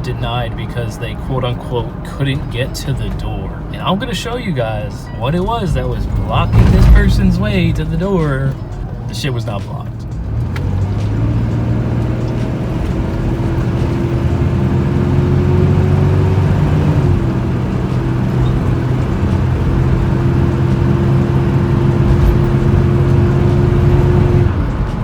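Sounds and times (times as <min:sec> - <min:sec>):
road rumble: 0:00.0 - 0:25.0
engine drone: 0:04.9 - 0:09.2.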